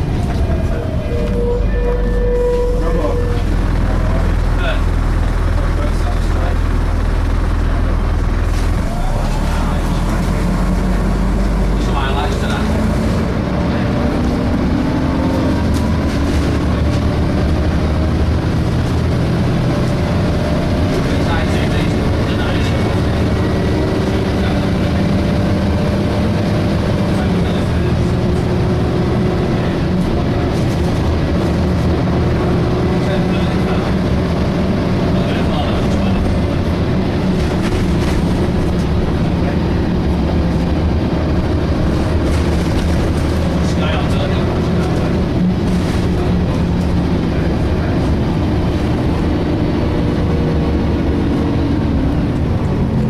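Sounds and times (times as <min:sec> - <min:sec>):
steady higher tone: 0:00.0 - 0:05.5
bus diesel engine running: 0:00.0 - 0:53.0
engine cooling fan drone: 0:00.0 - 0:53.0.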